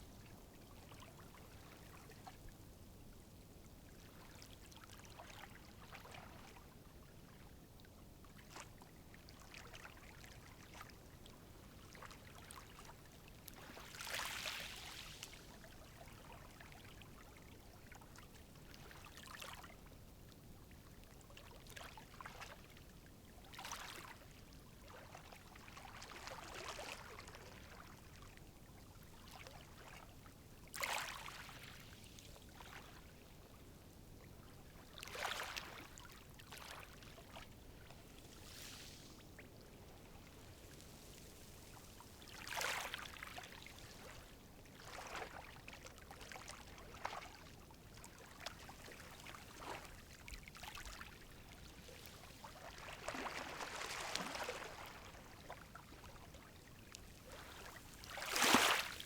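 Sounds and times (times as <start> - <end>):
calm sea waves washing in: 57.2 - 59.0
small wave breaking: 57.4 - 59.0.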